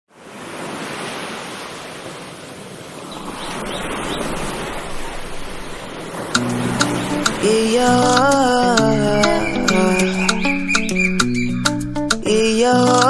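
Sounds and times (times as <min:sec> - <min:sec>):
ocean surf washing ashore: 0:00.1 - 0:13.0
music with low notes: 0:06.4 - 0:13.0
faint chirps: 0:09.2 - 0:11.8.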